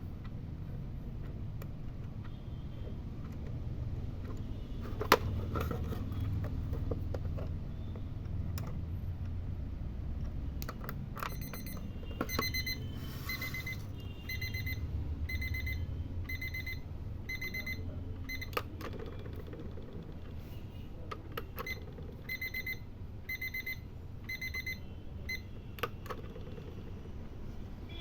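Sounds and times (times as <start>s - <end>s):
alarm clock beeping: 11.3s - 18.5s, 22.3s - 25.5s.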